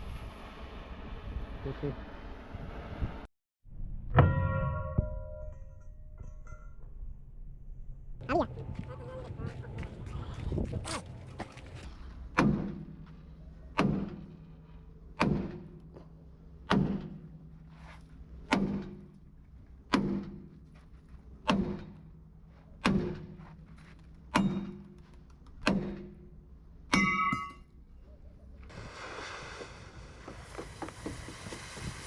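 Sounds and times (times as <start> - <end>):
hammer striking metal: 24.3 - 25.0, 26.9 - 27.7.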